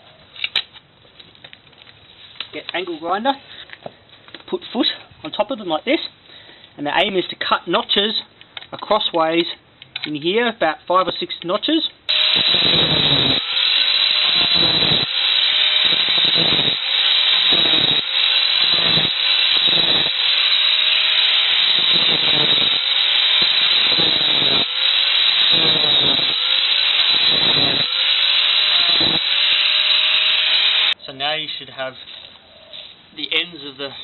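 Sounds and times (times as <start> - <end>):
angle grinder cutting steel rods: 12.1 - 31.0.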